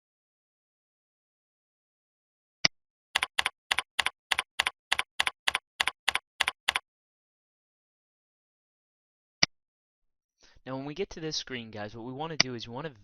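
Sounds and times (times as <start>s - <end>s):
typing on keyboard: 3.2s - 6.8s.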